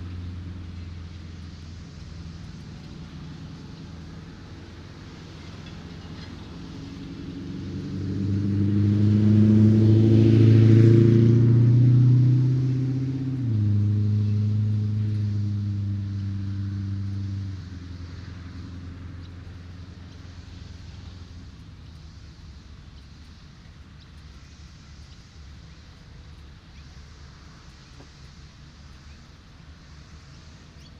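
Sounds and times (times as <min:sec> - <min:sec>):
steady background noise: 0:00.0 - 0:11.5, 0:12.2 - 0:30.9
vehicle engine driving past: 0:00.0 - 0:30.9.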